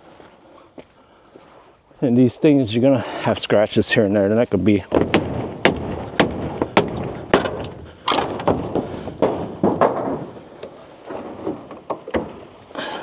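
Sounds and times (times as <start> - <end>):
wood cracking: 4.8 - 13.0
hammer striking wooden crate: 4.9 - 10.3.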